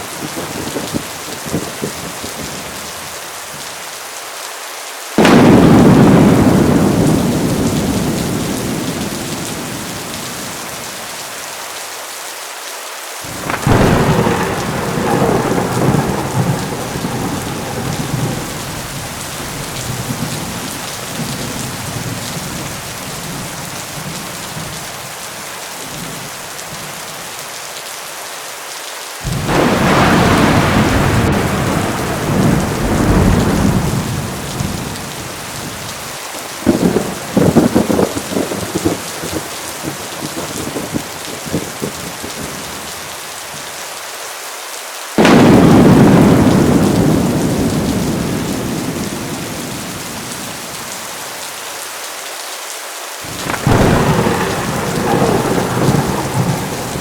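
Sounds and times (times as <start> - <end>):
heavy rain: 0.0 - 57.0
sharp crackling thunder: 0.2 - 2.9, 5.2 - 11.2, 13.3 - 25.2, 29.2 - 42.9, 45.2 - 51.5, 53.3 - 57.0
loud thunderclap: 5.2 - 10.7, 13.3 - 24.8, 29.2 - 36.0, 36.6 - 42.5, 45.2 - 50.9, 53.3 - 57.0
thunder rumbling: 5.2 - 11.0, 13.3 - 24.9, 29.2 - 42.7, 45.2 - 51.4, 53.3 - 57.0.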